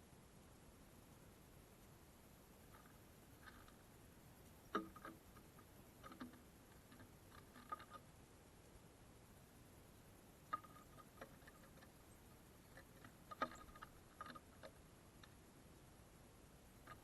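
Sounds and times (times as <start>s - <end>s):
birds pecking at feeder: 1.8s - 8.1s, 10.0s - 15.5s, 16.7s - 17.0s.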